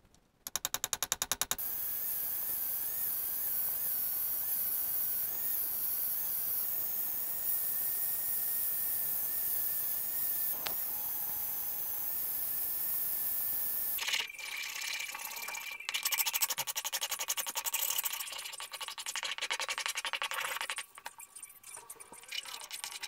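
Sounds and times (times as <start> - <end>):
power tool motor whining: 1.6 - 14.0.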